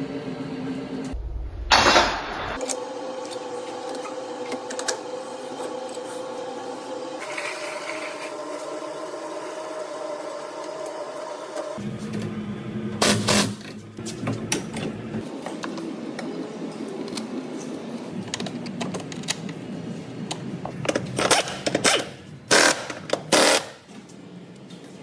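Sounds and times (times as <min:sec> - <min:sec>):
steady low hum: 0:00.0 - 0:07.2.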